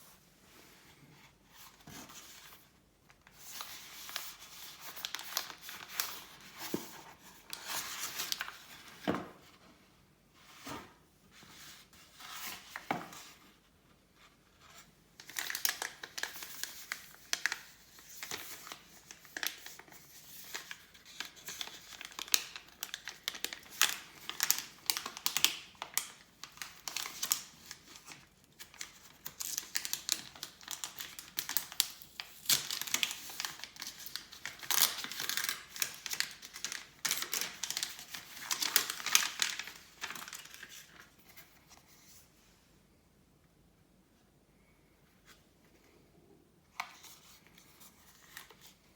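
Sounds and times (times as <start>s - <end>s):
packaging crinkling and tearing: 3.2s - 8.8s, 15.2s - 41.4s.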